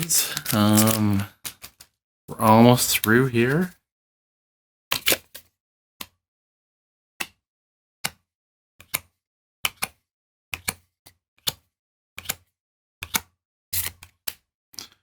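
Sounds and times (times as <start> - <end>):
trading cards snapping: 0.0 - 1.3.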